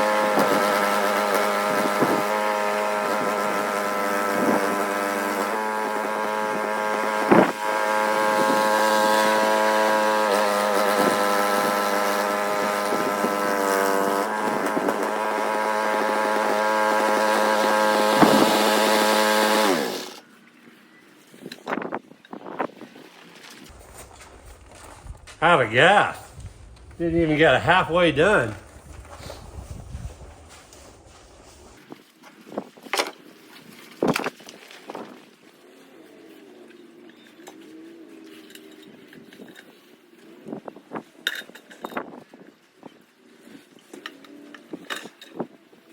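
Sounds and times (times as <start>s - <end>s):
snowblower engine running: 0.0s - 20.2s, 23.7s - 31.8s.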